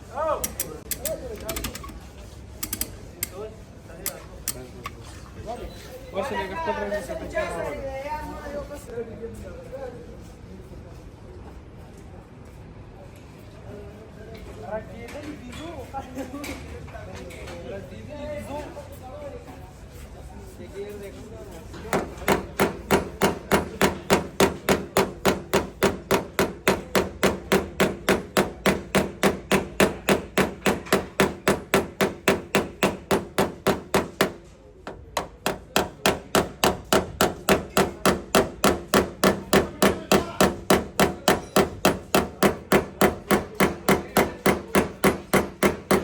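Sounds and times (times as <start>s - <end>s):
hammer blows on sheet metal: 21.9s - 34.4s, 35.2s - 46.0s.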